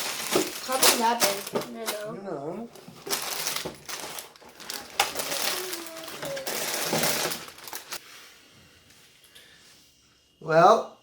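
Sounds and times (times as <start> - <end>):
plastic lego pieces clattering: 0.0 - 2.1, 3.0 - 8.0
rustling: 0.0 - 8.4.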